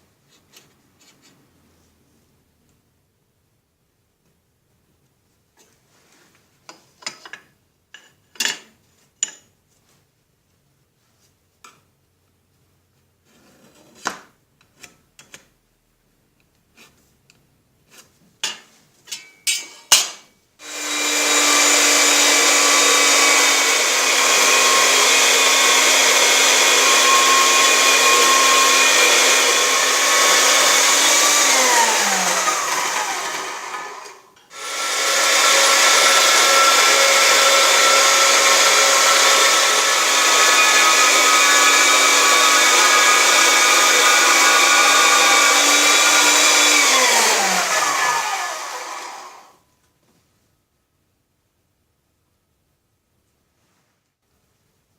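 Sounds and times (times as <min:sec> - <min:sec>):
power tool motor whining: 0:20.6 - 0:49.5.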